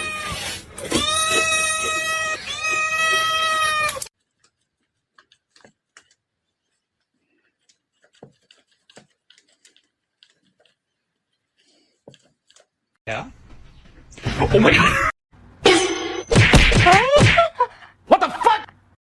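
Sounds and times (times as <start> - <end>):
cat yowling: 0.0 - 4.1.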